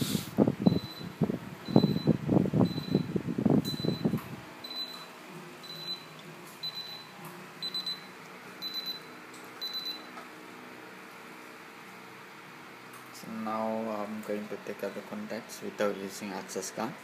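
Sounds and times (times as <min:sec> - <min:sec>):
alarm panel beeping: 0:00.6 - 0:10.1.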